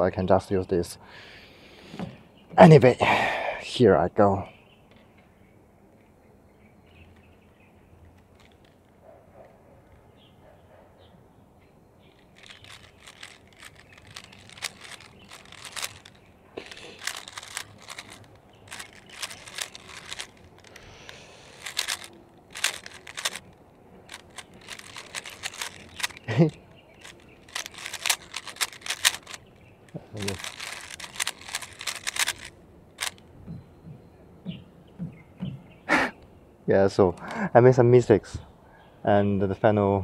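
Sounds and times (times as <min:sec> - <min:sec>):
puzzle cube plastic clicking: 0:12.2 - 0:33.2.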